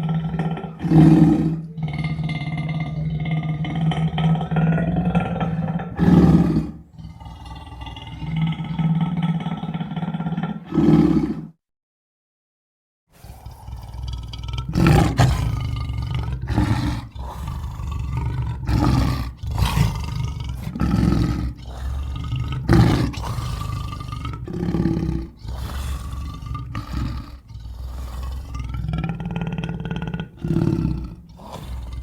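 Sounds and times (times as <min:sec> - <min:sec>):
lion roaring and growling: 0:00.0 - 0:11.6, 0:13.2 - 0:32.0.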